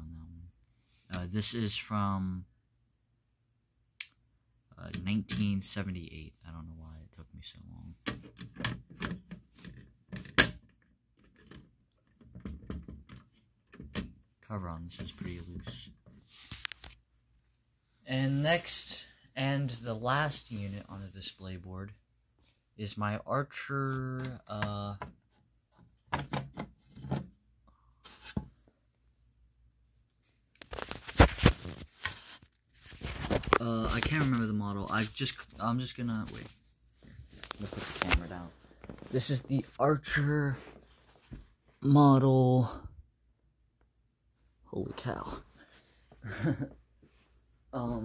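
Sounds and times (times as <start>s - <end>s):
scrapes and clicks of handling: 8.0s - 14.1s, 15.0s - 17.0s, 30.5s - 39.7s.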